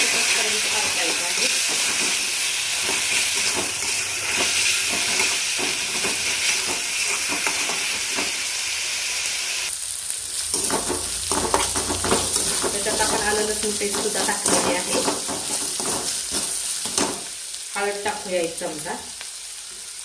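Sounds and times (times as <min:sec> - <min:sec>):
spoon stirring and scraping pan: 0:00.0 - 0:08.5, 0:10.4 - 0:17.4
puree sizzling in hot oil: 0:00.0 - 0:20.0.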